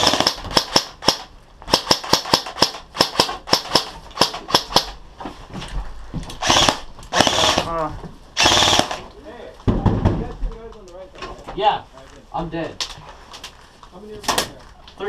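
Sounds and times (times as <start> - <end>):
airsoft rifle shots: 0.0 - 5.0, 6.4 - 7.8, 8.4 - 9.1.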